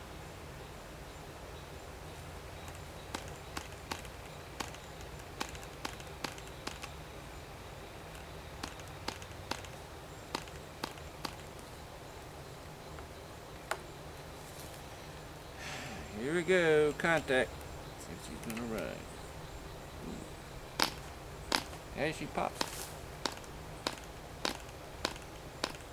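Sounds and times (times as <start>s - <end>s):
model engine propeller clicks: 2.6s - 7.0s, 8.1s - 11.7s, 18.3s - 19.0s, 20.8s - 25.9s.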